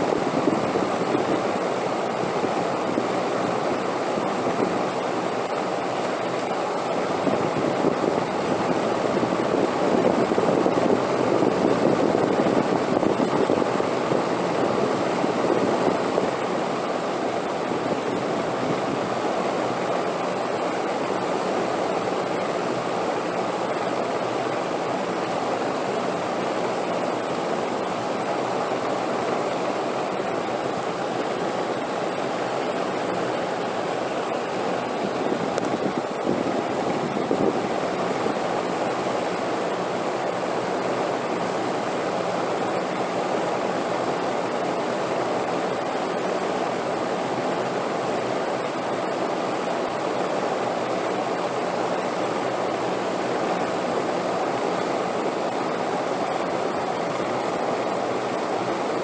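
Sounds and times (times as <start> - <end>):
wind blowing: 29.1 - 40.4.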